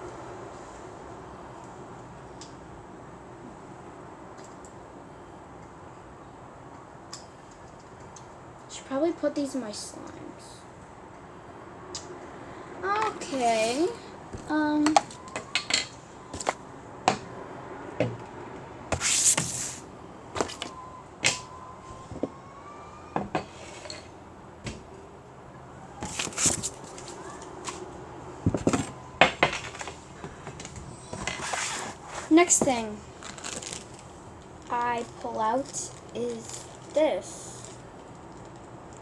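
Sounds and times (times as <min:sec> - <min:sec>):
plastic rustling: 0:19.0 - 0:19.8, 0:26.0 - 0:27.4, 0:31.2 - 0:37.0.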